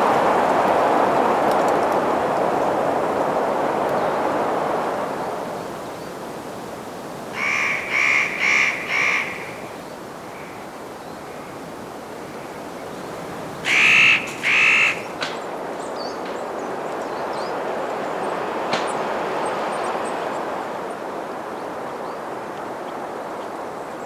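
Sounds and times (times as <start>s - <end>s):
steady wind hiss: 0.0s - 24.0s
crow cawing: 7.4s - 10.7s, 13.6s - 15.2s.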